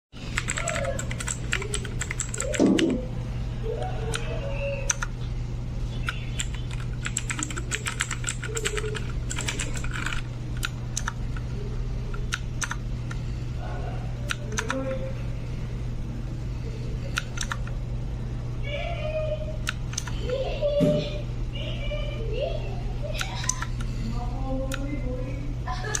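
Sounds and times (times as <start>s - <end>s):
steady low hum: 0.2s - 26.0s
mechanical keyboard key clicks: 17.2s - 17.7s.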